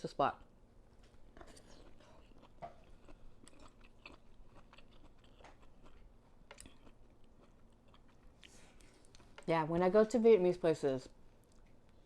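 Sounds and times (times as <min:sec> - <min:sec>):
person chewing noodles: 0:01.2 - 0:09.5.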